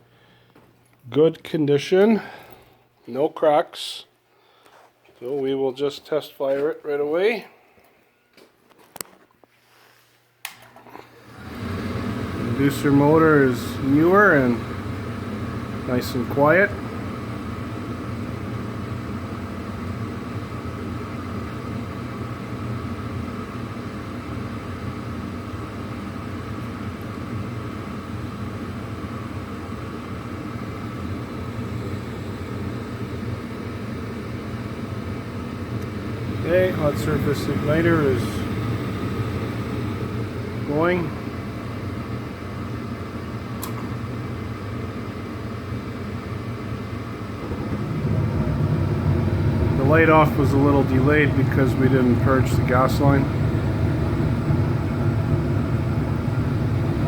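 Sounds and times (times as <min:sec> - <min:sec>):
furnace inducer motor humming: 0:10.4 - 0:57.0
burners lighting with low rumble: 0:11.2 - 0:57.0
sharp click: 0:43.6 - 0:43.9.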